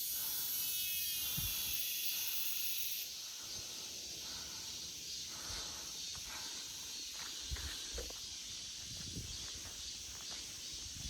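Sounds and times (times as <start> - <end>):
cicadas buzzing: 0.0 - 11.0.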